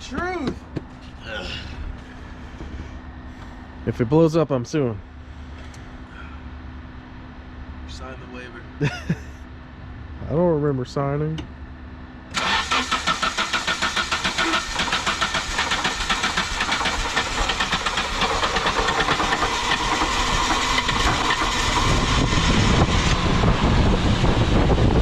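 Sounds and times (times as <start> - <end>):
car engine cranking and starting: 12.3 - 23.5.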